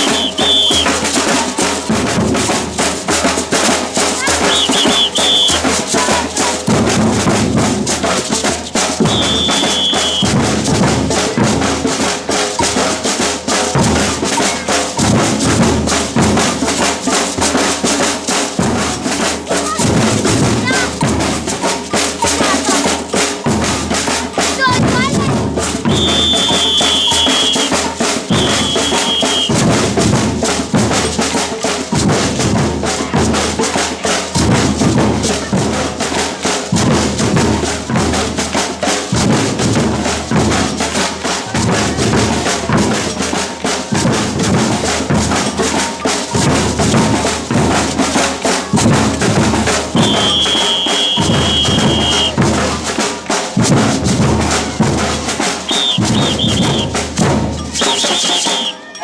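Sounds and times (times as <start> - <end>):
whistle blasts: 0.0 - 1.0, 4.4 - 5.7, 9.0 - 10.4, 25.9 - 29.6, 50.0 - 52.4, 55.7 - 57.0, 57.8 - 59.0
samba percussion group: 0.0 - 59.0.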